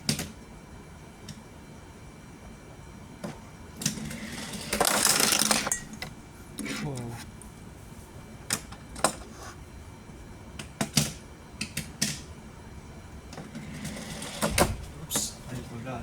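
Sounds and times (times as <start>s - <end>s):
toy car clattering on plastic track: 4.5s - 5.7s.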